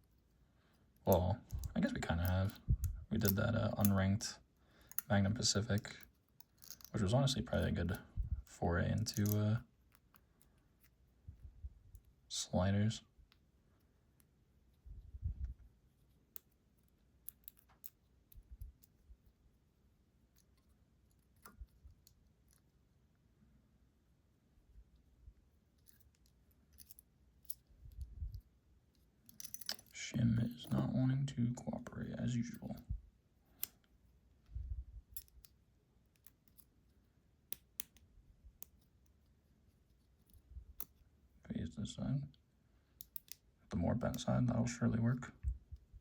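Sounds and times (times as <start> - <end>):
small metallic clicks: 4.8 - 5.1, 5.7 - 7.7, 16.3 - 19.1, 25.7 - 30.0, 35.1 - 39.2, 42.9 - 43.5
small metal clicks and taps: 5.8 - 6.9, 17.2 - 18.9, 29.2 - 29.9, 43.0 - 43.4.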